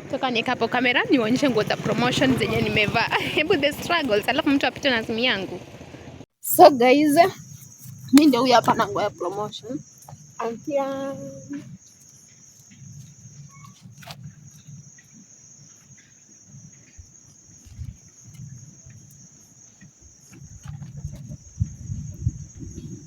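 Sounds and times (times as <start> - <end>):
insects chirring: 0.0 - 5.4, 6.4 - 23.0.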